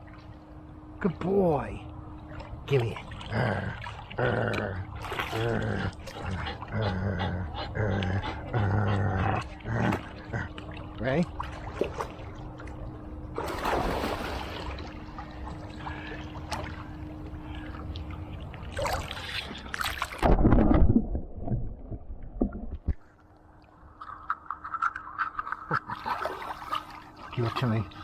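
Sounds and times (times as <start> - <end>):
water splashing and sloshing: 0.0 - 28.0.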